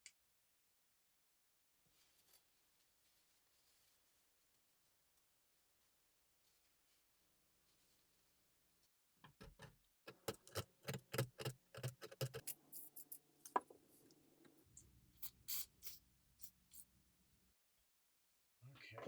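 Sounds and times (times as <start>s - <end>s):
sharp knocks and clicks: 9.2s - 12.5s.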